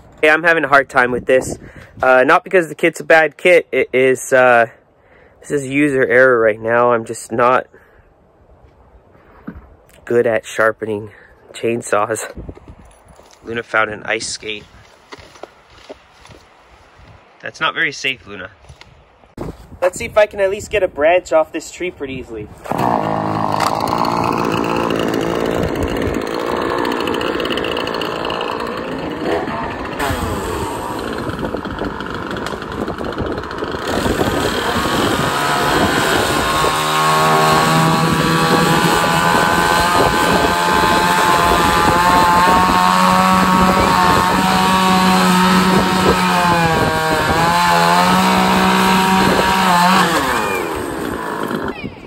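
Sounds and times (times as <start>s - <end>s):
chainsaw cutting branch: 22.6s - 51.8s.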